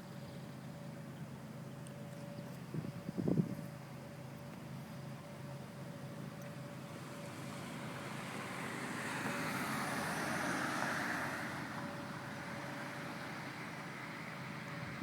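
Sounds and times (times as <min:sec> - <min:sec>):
vehicle passing: 0:07.0 - 0:15.0.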